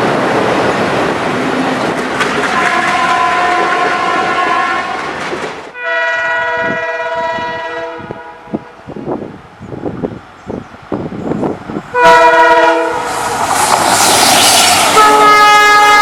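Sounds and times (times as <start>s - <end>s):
loud train rumble: 0.0s - 16.0s
wheels clicking over rail joints: 1.7s - 4.1s, 4.8s - 5.8s
diesel locomotive horn: 2.5s - 8.7s, 11.9s - 13.4s, 14.9s - 16.0s.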